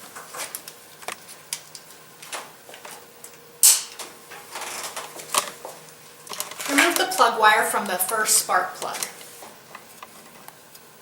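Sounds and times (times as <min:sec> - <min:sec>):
loud clip snap: 0:03.6 - 0:04.0.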